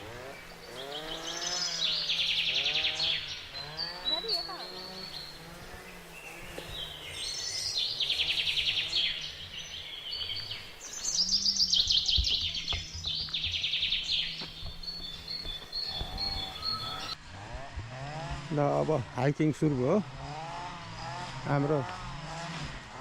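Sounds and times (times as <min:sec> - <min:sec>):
songbird trilling: 0:00.0 - 0:17.2.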